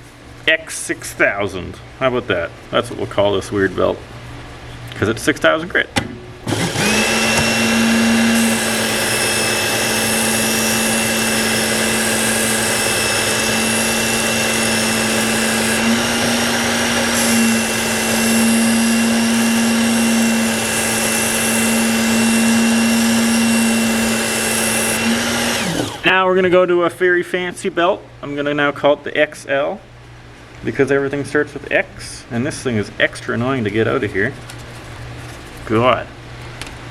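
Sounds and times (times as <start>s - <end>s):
belt sharpener motor whine: 6.4s - 26.0s.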